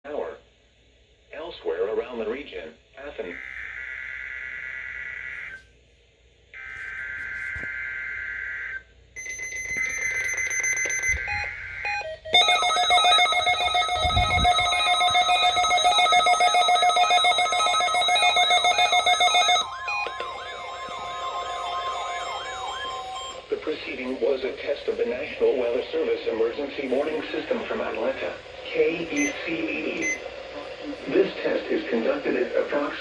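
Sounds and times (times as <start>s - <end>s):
shrill warbling alarm tone: 6.6s - 23.5s.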